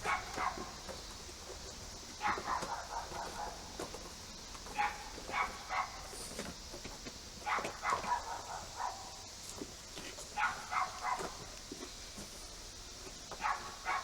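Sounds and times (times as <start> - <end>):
dog barking: 0.0 - 0.8, 2.2 - 3.7, 4.7 - 6.2, 7.4 - 9.2, 10.4 - 11.5, 13.4 - 14.0.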